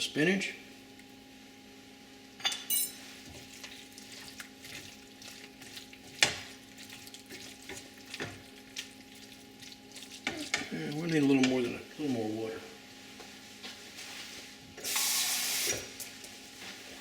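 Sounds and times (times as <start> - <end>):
metallic clink: 2.4 - 3.0
food sizzling softly: 3.0 - 17.0.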